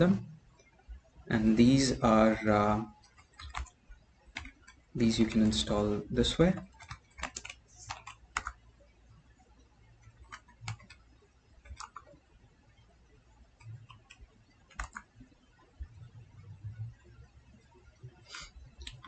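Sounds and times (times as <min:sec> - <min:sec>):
keyboard and mouse clicks: 0:03.0 - 0:04.8, 0:06.5 - 0:08.6, 0:10.0 - 0:11.0, 0:11.6 - 0:12.2, 0:13.6 - 0:15.2, 0:18.8 - 0:19.0.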